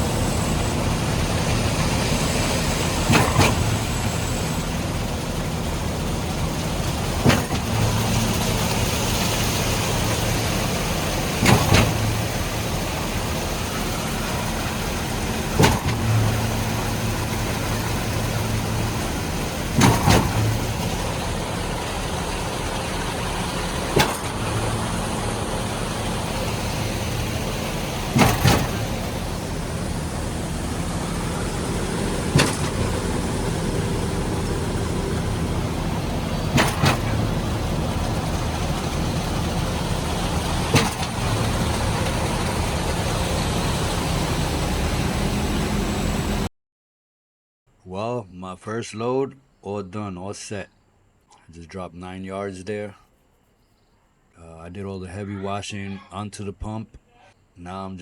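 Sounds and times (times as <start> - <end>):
diesel engine running: 0.0 - 46.5
sharp knock: 32.3 - 32.8.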